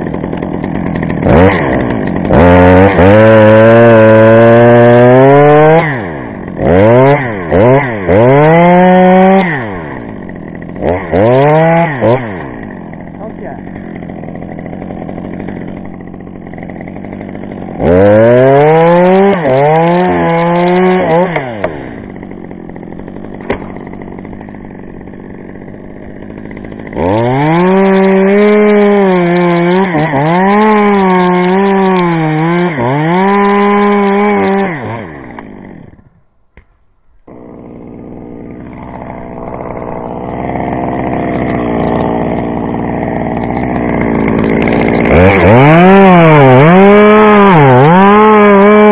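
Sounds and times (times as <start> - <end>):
chainsaw cutting wood: 0.0 - 48.9
chainsaw idling and revving: 0.0 - 48.9.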